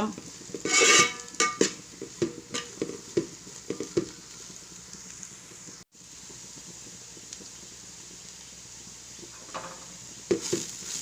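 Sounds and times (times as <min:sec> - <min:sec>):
faint frying sizzle: 0:00.0 - 0:11.0
spatula scraping frying pan: 0:00.3 - 0:04.0.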